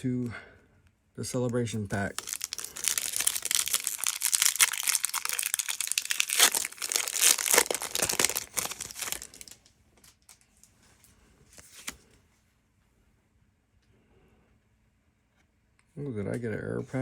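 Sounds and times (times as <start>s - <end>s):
foil wrapper crinkling and tearing: 1.7s - 10.4s.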